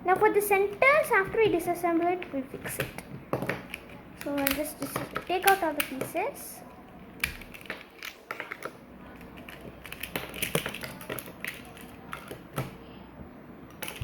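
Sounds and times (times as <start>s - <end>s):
plastic puzzle pieces clicking: 2.0s - 6.2s, 7.2s - 12.7s, 13.7s - 14.0s.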